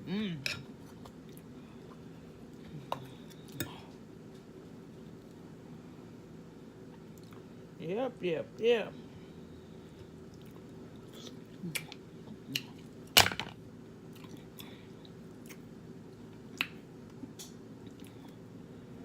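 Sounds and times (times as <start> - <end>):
person chewing food: 10.0 - 12.9, 14.1 - 18.4.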